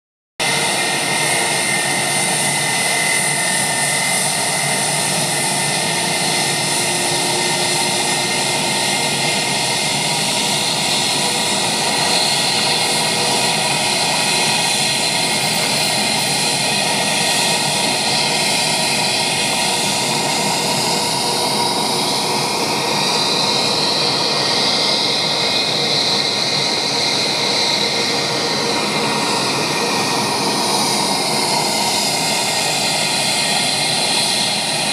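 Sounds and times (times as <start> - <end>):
high engine whine: 0.4 - 34.9
jet engines roaring: 0.4 - 34.9.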